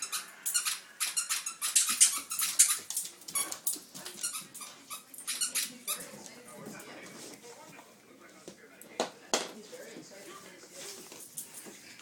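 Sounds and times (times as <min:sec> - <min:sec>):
squeaky toy squeaking: 0:00.0 - 0:03.6, 0:04.2 - 0:06.0.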